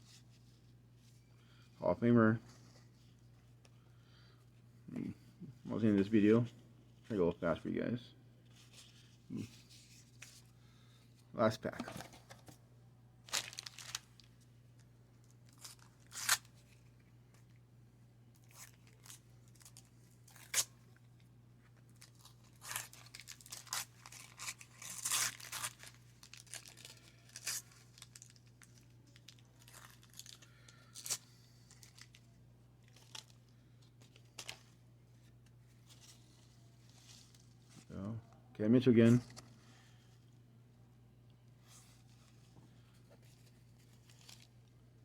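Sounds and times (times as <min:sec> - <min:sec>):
wax paper wrapper tearing: 0:13.3 - 0:14.3, 0:15.4 - 0:16.8, 0:18.4 - 0:20.8, 0:22.0 - 0:32.3, 0:32.9 - 0:33.4.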